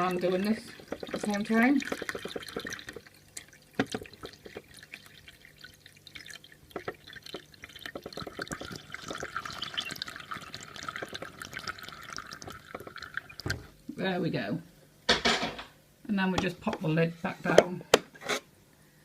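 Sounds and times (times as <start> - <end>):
water drips and splashes: 0.0 - 13.8
water pouring into tank: 0.0 - 13.8.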